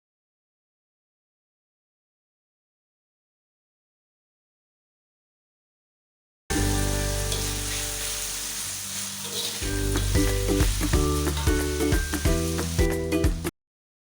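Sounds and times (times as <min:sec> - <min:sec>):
food sizzling in a pan: 0:06.5 - 0:13.5
background music with beat: 0:09.7 - 0:13.5.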